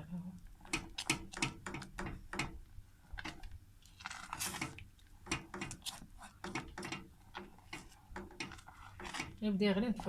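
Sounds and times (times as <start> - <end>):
utensil scraping saucepan: 5.6 - 10.0.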